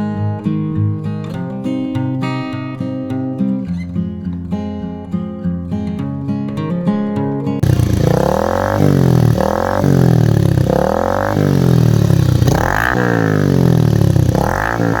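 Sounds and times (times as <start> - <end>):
motorcycle engine revving: 7.6 - 15.0.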